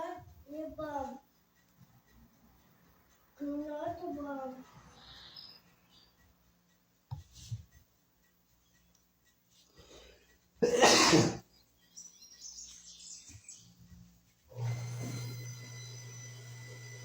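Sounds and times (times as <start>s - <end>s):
person coughing: 10.6s - 11.4s
electrical hum with high whine: 14.5s - 17.0s.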